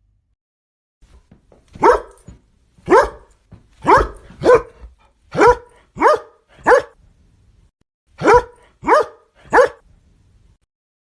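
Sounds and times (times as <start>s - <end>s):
dog barking: 1.8s - 7.0s, 8.2s - 9.8s.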